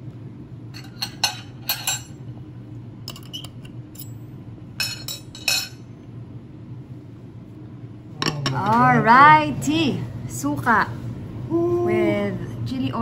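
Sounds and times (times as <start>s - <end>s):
low hum: 0.0s - 13.0s
dishes and cutlery clinking: 0.8s - 2.2s, 4.8s - 5.8s.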